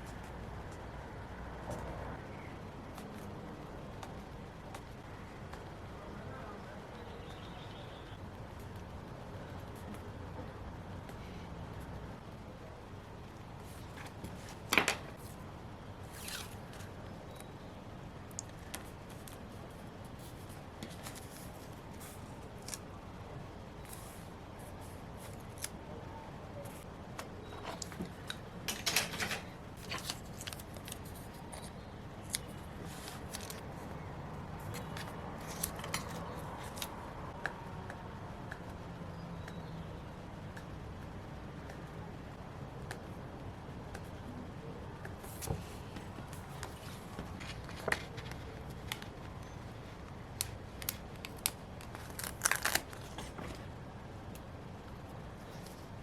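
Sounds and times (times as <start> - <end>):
paper and stickers crinkling: 27.5 - 33.9, 34.6 - 37.0, 45.2 - 53.7.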